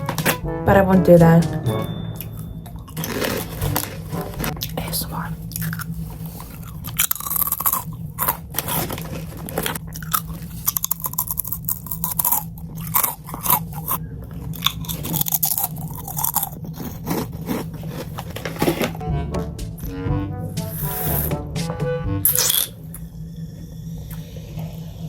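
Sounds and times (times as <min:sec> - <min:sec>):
low electrical hum: 0:00.0 - 0:25.0
crunchy chewing of a snack: 0:02.8 - 0:04.8, 0:05.4 - 0:18.9.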